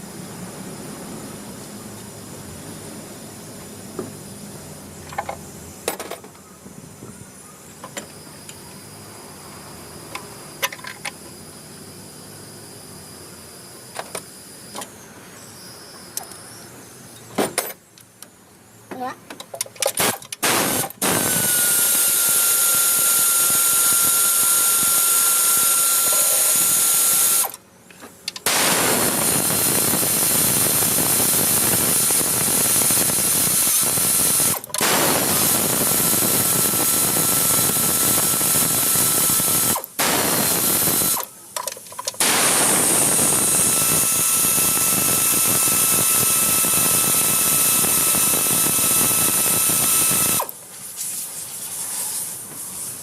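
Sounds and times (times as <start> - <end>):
thin steady whine: 0.0 - 53.0
power tool running: 20.0 - 27.6, 28.4 - 41.3, 42.2 - 50.6.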